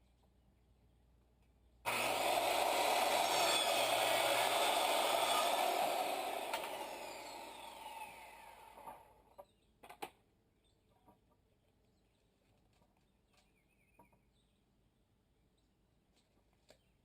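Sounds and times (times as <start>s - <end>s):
power saw blade winding down: 1.9s - 9.2s.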